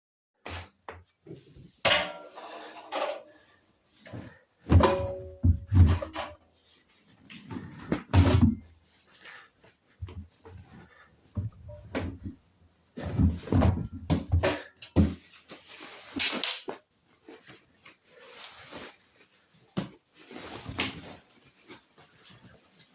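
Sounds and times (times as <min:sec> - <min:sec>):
plastic and metal clunks: 0:04.7 - 0:06.4.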